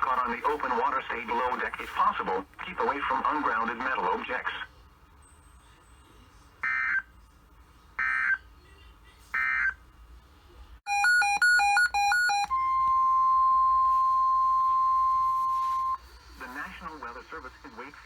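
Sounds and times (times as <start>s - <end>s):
steady warning alarm tone: 6.6s - 7.0s, 8.0s - 8.4s, 10.9s - 17.8s
electronic beeps: 10.9s - 16.0s.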